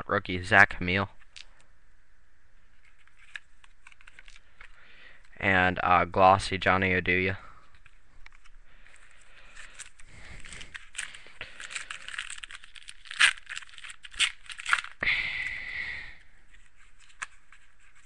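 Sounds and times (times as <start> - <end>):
plastic wrapper crinkling: 2.7 - 5.4, 7.6 - 15.0
plastic pack ripping open: 2.8 - 4.8, 7.7 - 15.0.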